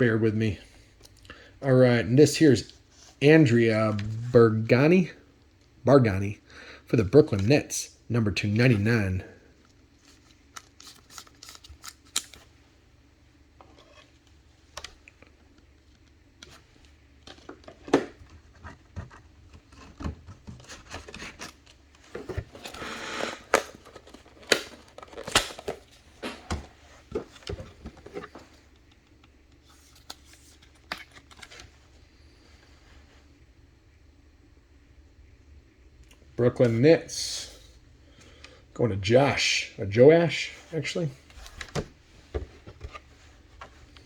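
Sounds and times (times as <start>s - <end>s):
cards clicking and scraping: 9.6s - 12.5s, 13.6s - 31.7s.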